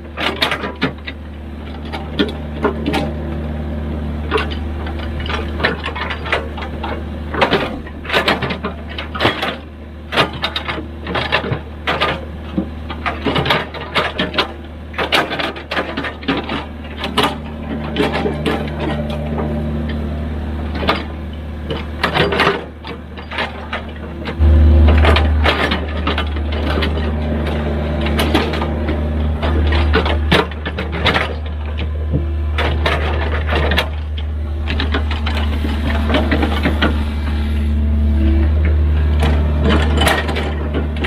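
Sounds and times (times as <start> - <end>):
excavator diesel engine drone: 0.0 - 41.0
metallic clanks and knocks: 4.3 - 37.0.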